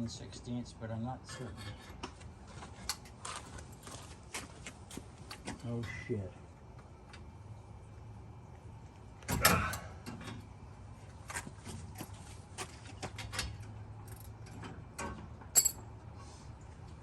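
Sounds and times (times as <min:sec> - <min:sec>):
metal hand tools clinking: 0:15.6 - 0:15.8.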